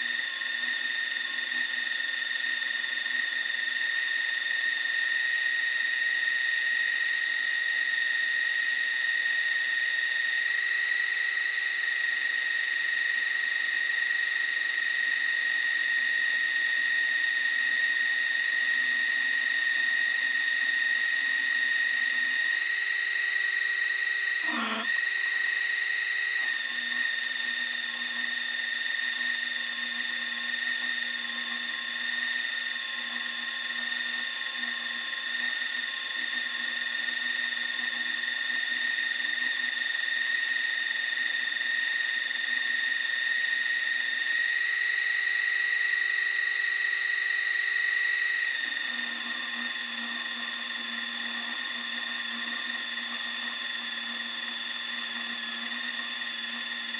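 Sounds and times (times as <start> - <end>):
small motor high whine: 0.0 - 56.9.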